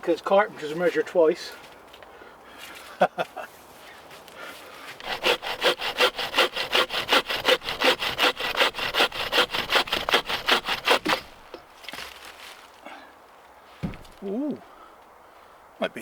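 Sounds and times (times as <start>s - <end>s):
hand saw cutting wood: 5.0s - 11.5s.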